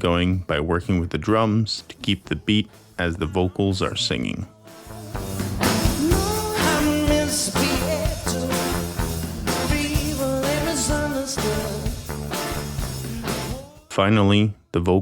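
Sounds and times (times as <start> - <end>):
drums: 1.2 - 3.1, 4.6 - 14.0
person singing: 2.3 - 12.1, 13.0 - 14.4
blues-rock bass line: 4.8 - 13.7.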